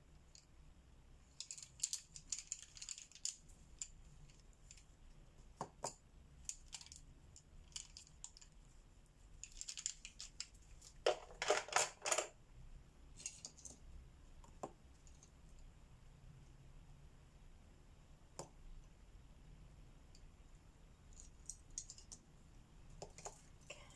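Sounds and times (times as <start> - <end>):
coloring tool clicks and taps: 23.0 - 23.4.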